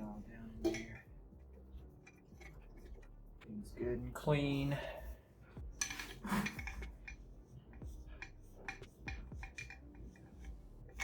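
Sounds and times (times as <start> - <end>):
tools clicking and tapping: 0.0 - 3.2, 5.6 - 11.0.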